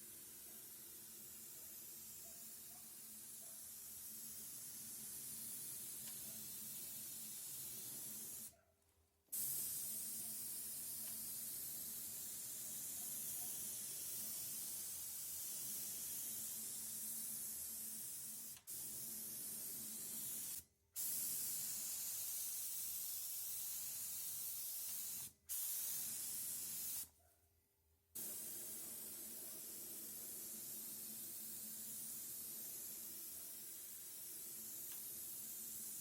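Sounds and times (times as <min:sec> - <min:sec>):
spray gun hissing: 0:28.2 - 0:36.0.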